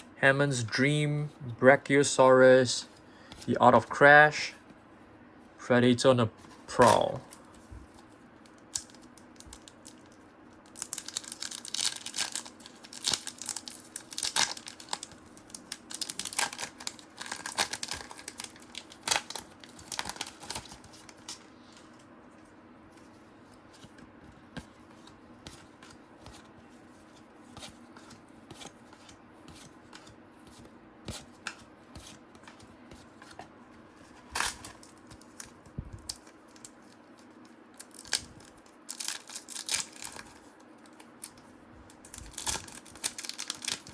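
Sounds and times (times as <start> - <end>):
wrappers rustling and crinkling: 7.1 - 21.9, 34.0 - 43.9.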